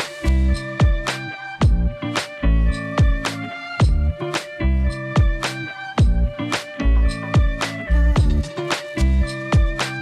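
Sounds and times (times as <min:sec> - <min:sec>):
low drum hits: 0:01.6 - 0:01.9, 0:06.0 - 0:06.2.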